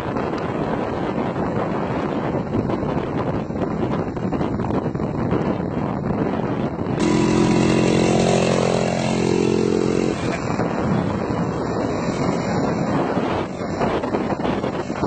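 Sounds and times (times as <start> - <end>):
wind noise on microphone: 0.0 - 15.0
small two-stroke engine running: 7.0 - 15.0.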